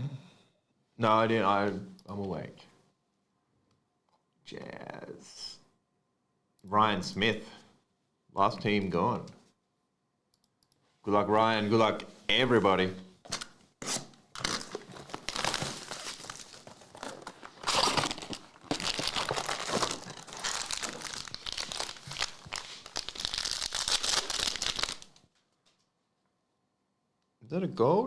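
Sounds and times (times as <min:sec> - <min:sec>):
card pack wrappers crackling: 0:13.3 - 0:25.2.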